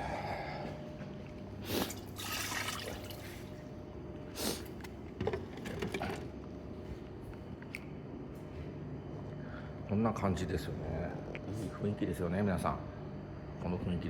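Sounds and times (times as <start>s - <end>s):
low electrical hum: 0.0s - 14.0s
broth pouring and splashing: 1.9s - 3.5s.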